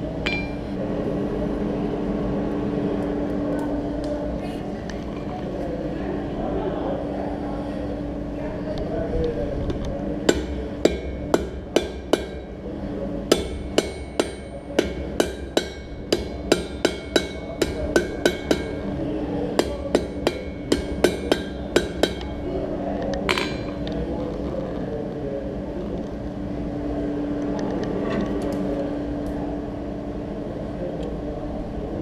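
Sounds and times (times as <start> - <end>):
steady hum: 0.0 - 32.0
hammer striking steel on anvil: 0.2 - 0.8, 10.3 - 12.6, 13.3 - 18.8, 19.6 - 22.4, 23.3 - 23.8
metallic ring: 0.2 - 0.8.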